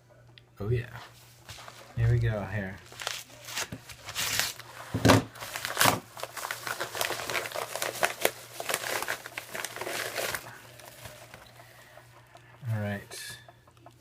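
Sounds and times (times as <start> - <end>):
package tearing: 2.8 - 11.4
packaging crinkling and rustling: 2.8 - 12.5.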